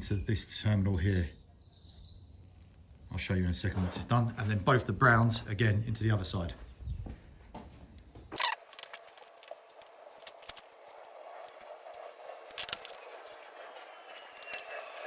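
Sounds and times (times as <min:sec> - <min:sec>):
light rustling of small parts: 0:07.9 - 0:11.8.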